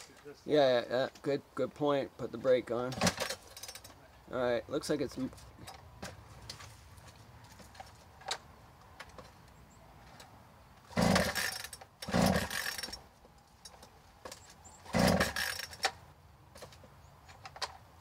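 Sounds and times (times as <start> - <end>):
chainsaw recoil starter pulls: 2.9 - 4.0, 10.9 - 13.1, 14.8 - 16.0
chainsaw engine turning over: 3.0 - 3.9, 10.8 - 13.1, 14.8 - 16.0.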